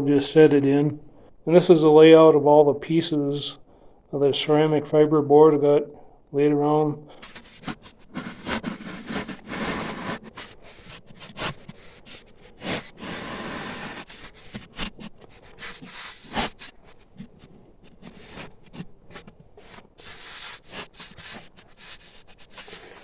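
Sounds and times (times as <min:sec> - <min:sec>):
board scraping and rubbing: 0:07.2 - 0:23.0.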